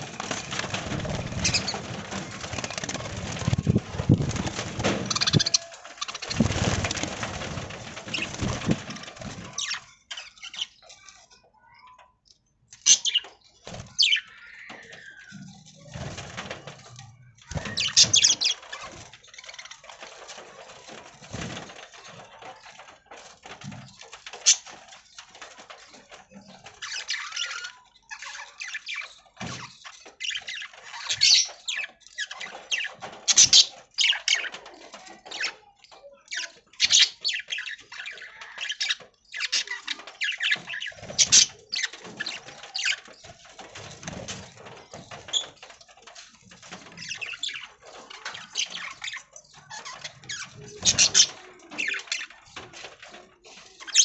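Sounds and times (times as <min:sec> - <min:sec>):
budgerigars chattering and chirping: 0:47.0 - 0:52.4.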